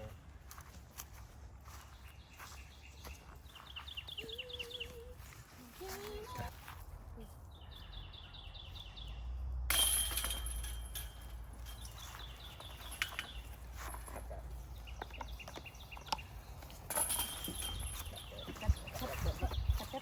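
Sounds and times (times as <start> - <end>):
rush of outdoor noise: 0.0 - 20.0
bird chirping trills: 1.7 - 5.3, 7.5 - 9.5, 10.2 - 20.0.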